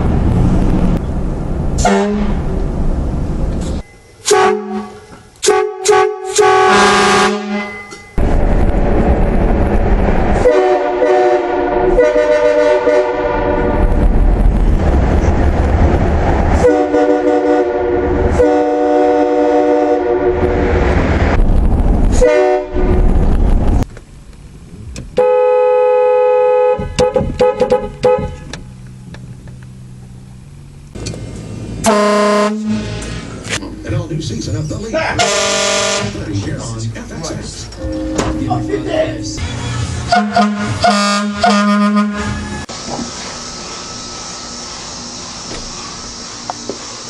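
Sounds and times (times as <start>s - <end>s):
low rumble: 0.0s - 3.9s, 8.1s - 18.4s, 20.1s - 25.2s
multi-tone air horn blasts: 1.8s - 2.4s, 4.2s - 7.7s, 10.4s - 13.8s, 16.6s - 20.6s, 22.1s - 23.0s, 25.2s - 28.6s, 31.8s - 33.2s, 35.2s - 36.2s, 40.0s - 42.7s.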